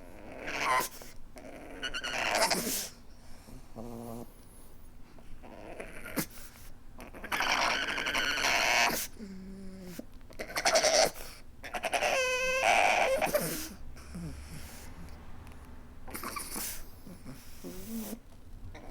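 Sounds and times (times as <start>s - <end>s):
dog whining and whimpering: 0.0s - 3.0s, 5.4s - 6.3s, 7.0s - 14.9s, 16.1s - 18.9s
dog snorting breaths: 2.0s - 15.4s, 16.0s - 18.9s.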